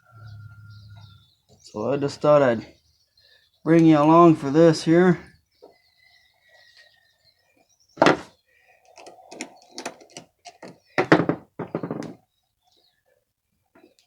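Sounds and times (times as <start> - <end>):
knocks and clunks of tools: 8.0 - 8.3, 9.0 - 12.2.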